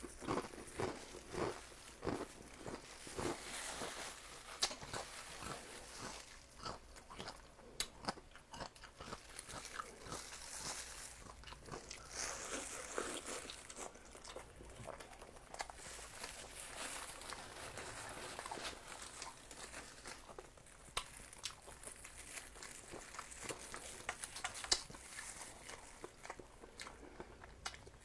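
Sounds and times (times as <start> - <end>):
crunchy food being chewed: 0.0 - 28.0.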